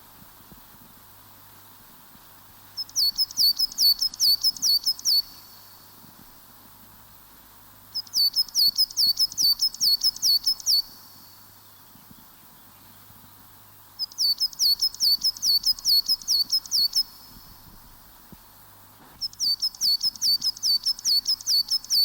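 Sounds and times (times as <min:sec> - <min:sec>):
small songbird singing: 0:02.6 - 0:06.1, 0:07.9 - 0:17.8, 0:19.2 - 0:22.0.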